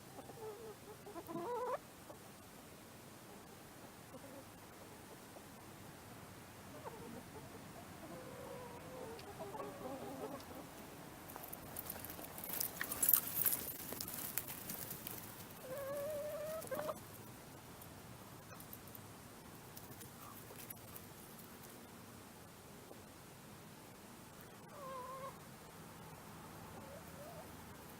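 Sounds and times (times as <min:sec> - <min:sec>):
hens clucking: 0:00.1 - 0:02.2, 0:06.7 - 0:12.0, 0:13.9 - 0:17.1, 0:24.7 - 0:25.4.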